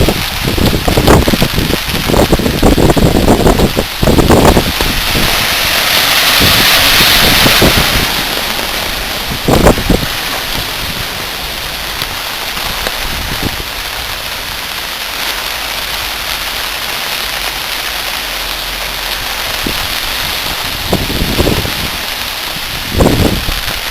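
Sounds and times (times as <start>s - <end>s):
rain falling: 0.0s - 23.9s
wind rumbling on microphone: 0.0s - 23.9s.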